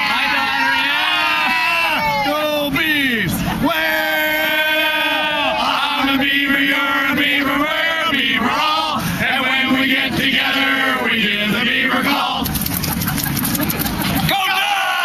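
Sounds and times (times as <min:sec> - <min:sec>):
voices chanting in unison: 0:03.8 - 0:12.4.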